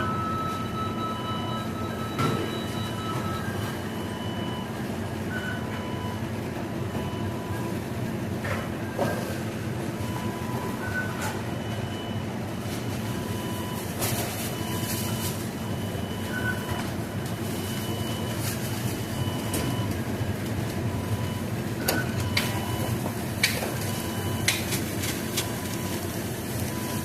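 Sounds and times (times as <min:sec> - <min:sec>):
fryer and timer beeps: 0:00.0 - 0:27.0
ventilation rumble: 0:00.0 - 0:27.0.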